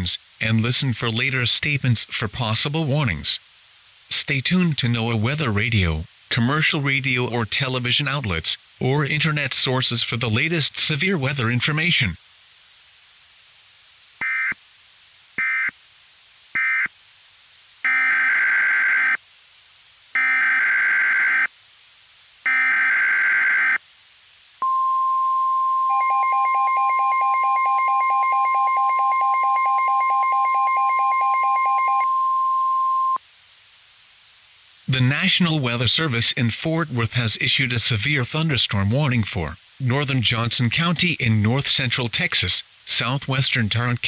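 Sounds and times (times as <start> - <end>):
steady warning alarm tone: 17.9 - 19.2, 20.2 - 21.5, 22.5 - 23.8.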